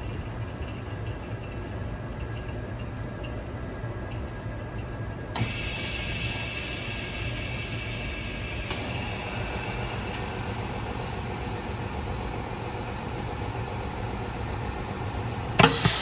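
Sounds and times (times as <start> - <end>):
laminating machine humming: 5.4 - 16.0.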